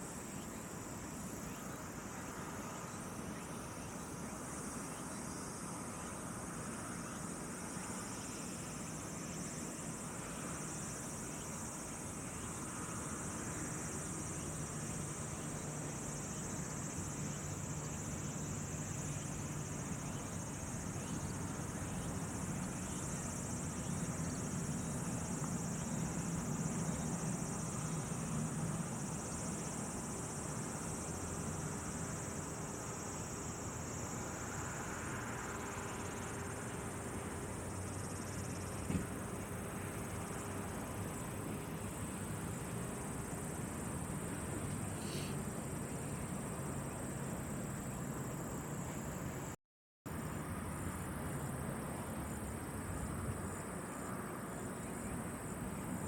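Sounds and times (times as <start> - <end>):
high-pitched insect chorus: 0.0 - 56.0.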